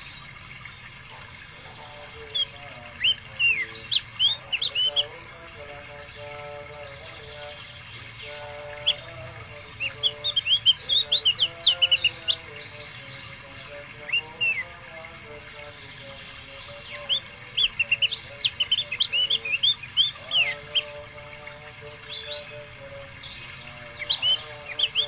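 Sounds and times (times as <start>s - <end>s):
songbird chirping: 0.0s - 25.0s
slurred bird call: 1.7s - 12.9s, 16.2s - 25.0s.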